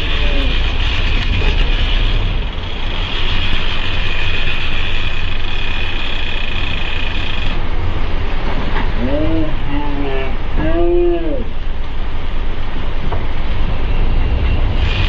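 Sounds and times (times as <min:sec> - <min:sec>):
boat engines running: 0:00.0 - 0:10.6, 0:11.3 - 0:15.0
high-pitched whine: 0:00.0 - 0:15.0
rush of wind and water: 0:07.6 - 0:15.0.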